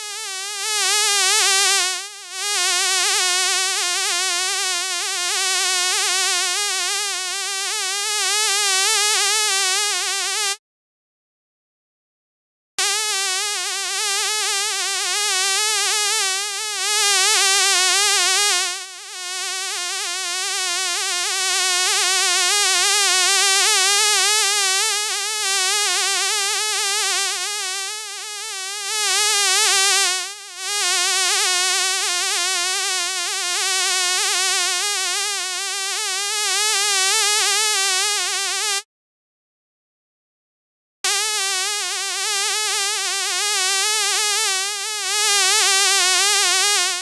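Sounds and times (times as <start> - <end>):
fly buzzing: 0.0 - 10.6, 12.8 - 38.8, 41.1 - 47.0.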